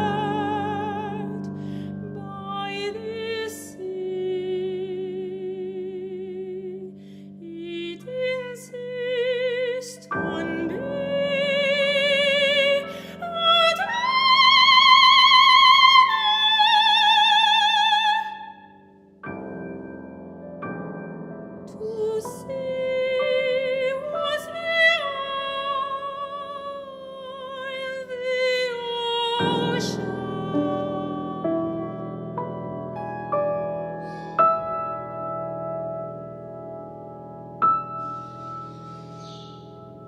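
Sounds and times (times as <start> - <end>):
soprano singing with vibrato: 0.0 - 18.8, 21.7 - 32.4.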